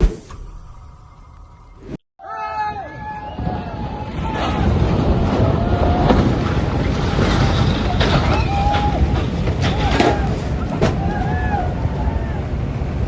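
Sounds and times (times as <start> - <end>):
wind buffeting microphone: 3.4 - 13.0.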